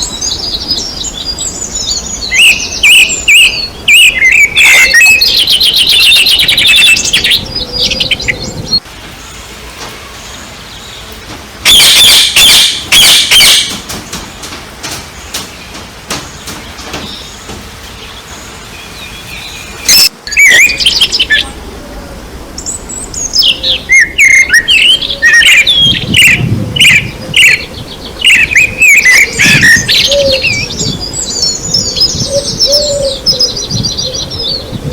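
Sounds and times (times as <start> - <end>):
birds chirping: 0.0 - 34.9
steady background noise: 0.0 - 34.9
loud bursts of noise: 8.6 - 18.7.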